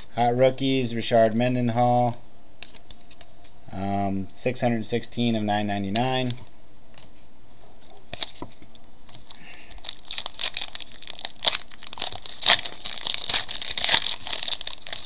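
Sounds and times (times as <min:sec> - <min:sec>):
wrapper tearing and crinkling: 0:09.1 - 0:15.0.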